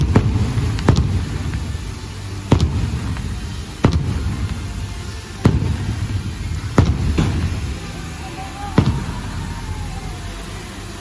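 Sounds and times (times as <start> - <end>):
fireworks bangs: 0.0 - 11.0.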